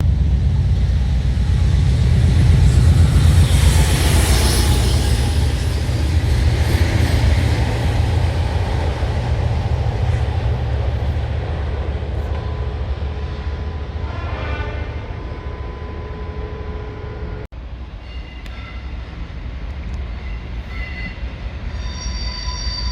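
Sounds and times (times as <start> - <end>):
diesel locomotives rumbling past: 0.0 - 22.9.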